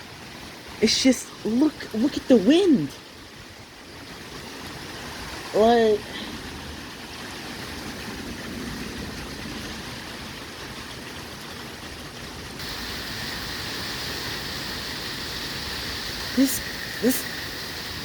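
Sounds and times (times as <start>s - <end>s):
heavy rain: 4.0s - 18.0s
strong storm wind: 12.6s - 18.0s.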